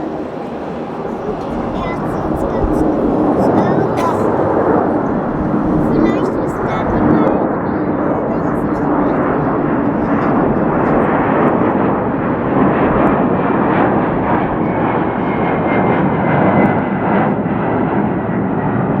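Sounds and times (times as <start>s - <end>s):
faint high whine: 0.0s - 14.0s
jet engines roaring: 0.0s - 19.0s.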